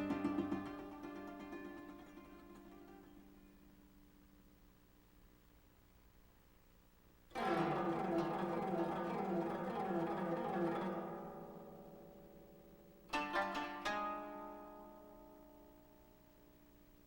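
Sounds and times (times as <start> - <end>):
zither plucked strings: 0.0 - 3.7, 7.3 - 16.1.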